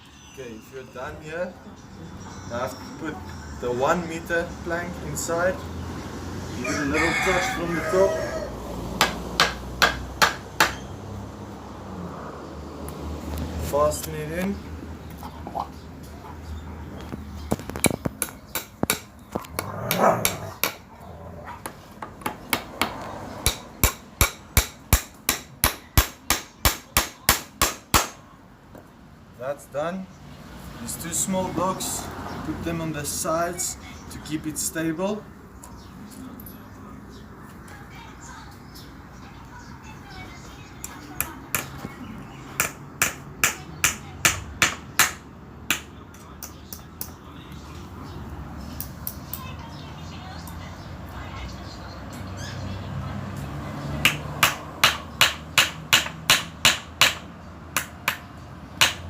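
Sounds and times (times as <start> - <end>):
hammer hitting nails into wood: 9.0 - 10.8, 17.8 - 20.8, 22.2 - 28.2, 42.6 - 45.9, 54.0 - 58.2, 58.8 - 59.0.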